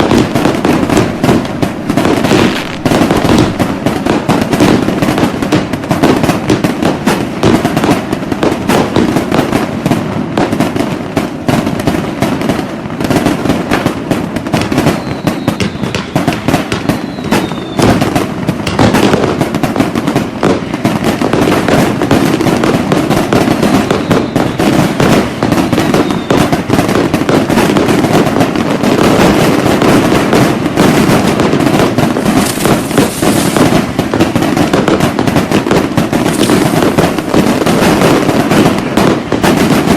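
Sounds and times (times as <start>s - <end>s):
fireworks crackling and banging: 0.0s - 39.9s
faint high whistle: 14.9s - 16.0s, 16.8s - 18.0s, 23.9s - 24.8s, 25.7s - 26.5s.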